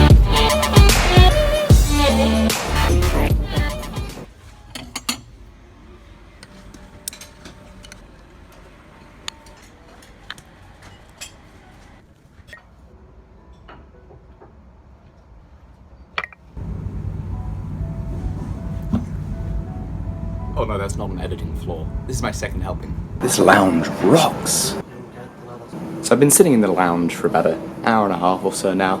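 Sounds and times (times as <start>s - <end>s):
cutlery clinking on plates: 4.7s - 5.3s
low rumble: 16.6s - 24.8s
low room hum: 16.6s - 24.9s.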